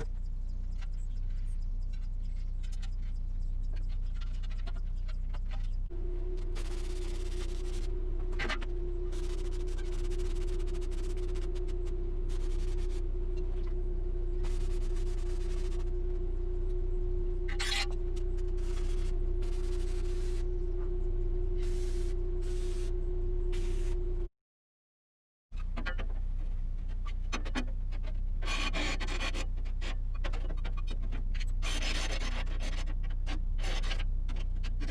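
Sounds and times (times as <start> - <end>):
steady machine hum: 0.0 - 24.3.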